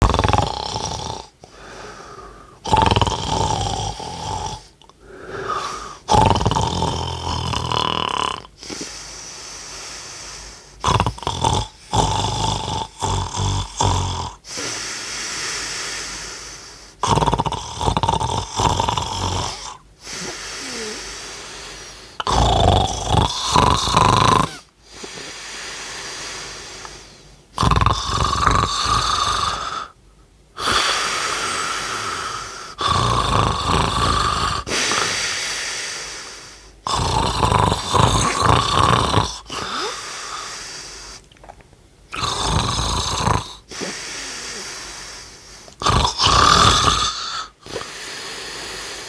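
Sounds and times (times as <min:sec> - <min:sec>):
person snoring loudly: 0:00.0 - 0:01.8, 0:02.5 - 0:08.9, 0:10.8 - 0:16.2, 0:17.0 - 0:26.6, 0:27.6 - 0:30.0, 0:30.6 - 0:41.2, 0:42.1 - 0:49.0
wheezy breaths: 0:01.4 - 0:03.6, 0:04.6 - 0:06.9, 0:08.6 - 0:10.8, 0:14.4 - 0:17.0, 0:19.4 - 0:23.1, 0:23.9 - 0:27.4, 0:30.6 - 0:41.4, 0:42.1 - 0:49.0.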